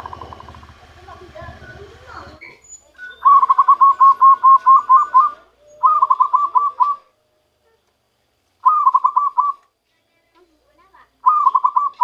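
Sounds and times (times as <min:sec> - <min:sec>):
dove cooing: 0:03.2 - 0:07.2, 0:08.6 - 0:09.6, 0:11.2 - 0:12.0.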